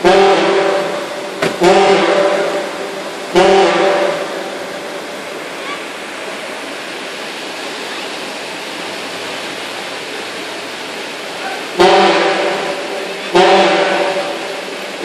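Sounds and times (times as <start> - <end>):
deep horn blasts: 0.0 - 5.2, 11.7 - 15.0
floodwater rushing: 0.0 - 15.0.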